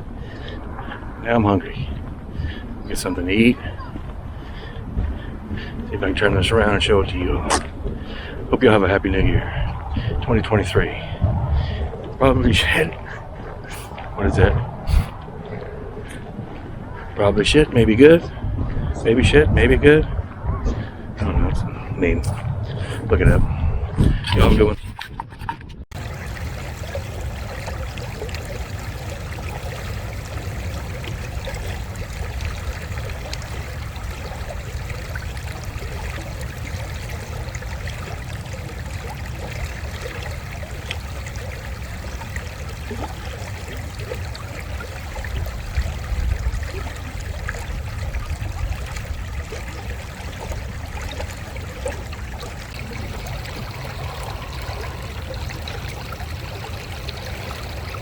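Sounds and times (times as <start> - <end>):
creek water running: 0.0 - 11.8, 25.9 - 58.0
low rumble: 52.7 - 58.0.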